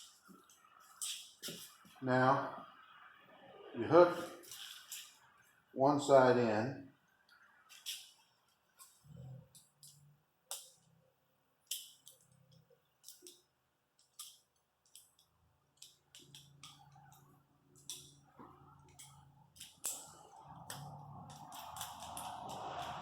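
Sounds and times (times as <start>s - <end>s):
light metallic clicks and clinks: 11.7s - 23.0s.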